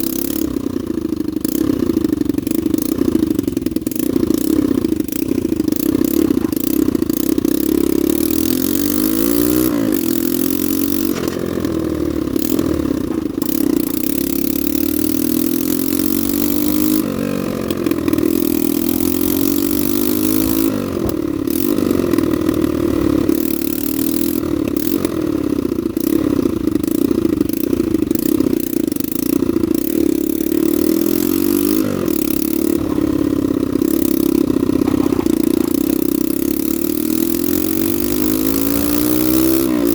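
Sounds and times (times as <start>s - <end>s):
small motorcycle engine running: 0.0s - 39.9s
engine throttle blips: 17.9s - 23.5s.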